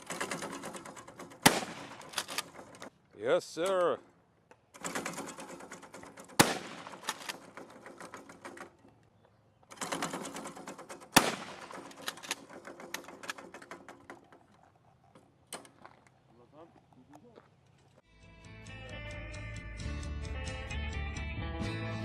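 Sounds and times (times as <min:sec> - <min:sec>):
rapid gunfire: 0:00.0 - 0:02.9, 0:04.8 - 0:08.6, 0:09.7 - 0:13.6
loud sharp gunshot: 0:01.4 - 0:02.0, 0:06.4 - 0:07.1, 0:11.2 - 0:11.8.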